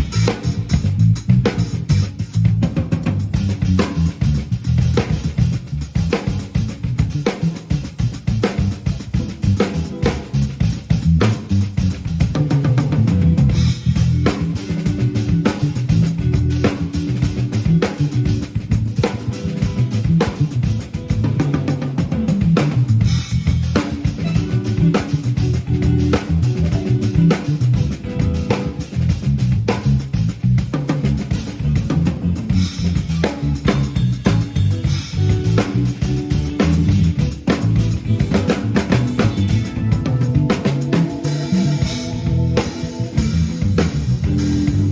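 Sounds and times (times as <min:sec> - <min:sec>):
bass guitar: 0:00.0 - 0:44.9
drum kit groove: 0:00.0 - 0:44.9
sustained guitar notes: 0:23.8 - 0:28.5, 0:35.2 - 0:44.9.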